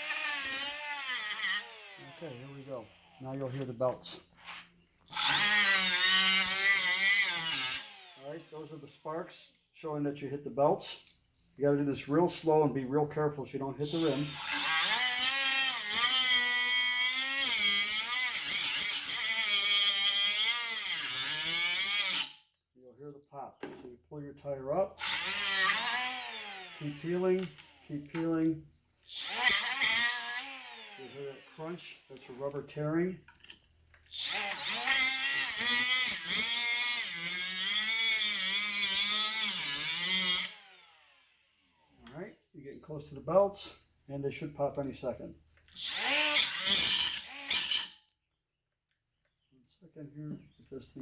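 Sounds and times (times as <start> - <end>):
angle grinder cutting rubber tire: 0.0 - 3.8, 5.1 - 8.9, 13.8 - 22.4, 24.9 - 32.7, 34.1 - 41.5, 45.7 - 48.0.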